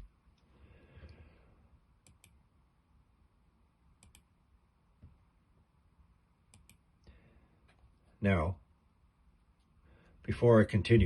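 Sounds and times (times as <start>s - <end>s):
computer mouse clicking: 2.0s - 2.4s, 4.0s - 4.3s, 6.5s - 6.8s.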